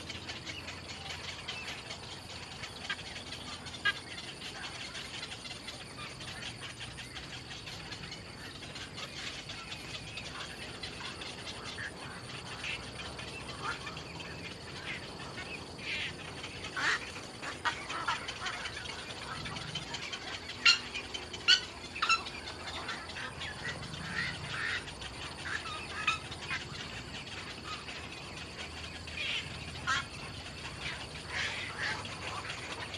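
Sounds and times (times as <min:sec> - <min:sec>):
birds chirping: 0:00.0 - 0:32.9
sharp loud bird calls: 0:02.6 - 0:32.9.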